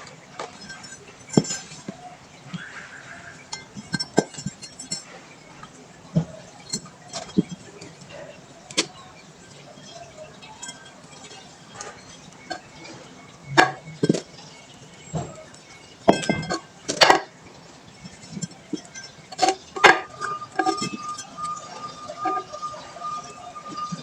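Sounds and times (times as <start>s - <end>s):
hard objects clinking and knocking: 0.4s - 24.0s
steady high tone: 18.9s - 24.0s.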